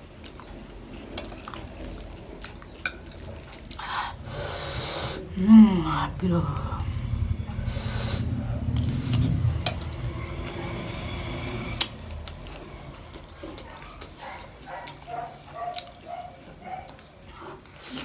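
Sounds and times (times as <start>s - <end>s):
chewing and crunching snacks: 0.0s - 4.3s, 8.8s - 18.0s.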